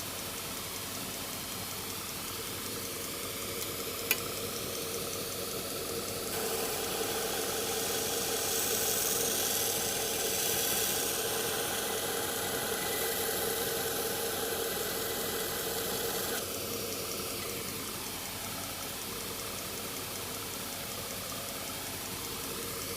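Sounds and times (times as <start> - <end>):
belt grinder motor hum: 3.6 - 16.4
steel blade grinding hiss: 6.3 - 16.4.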